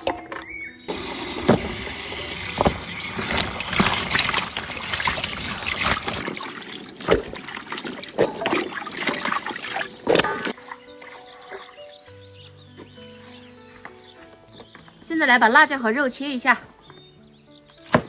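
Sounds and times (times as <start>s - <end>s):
water running and splashing: 0.9s - 13.7s.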